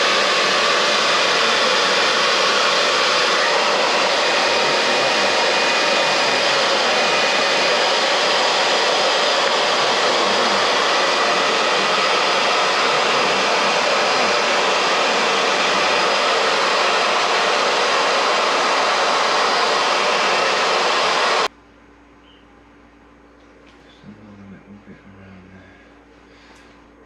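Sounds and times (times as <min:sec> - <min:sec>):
heat gun blowing air: 0:00.0 - 0:21.5.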